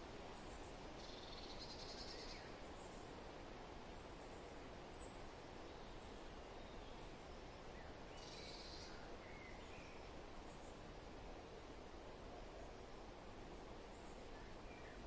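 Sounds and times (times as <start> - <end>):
soft wind: 0.0 - 15.0
faint bird chirps: 0.4 - 3.2, 4.2 - 10.8.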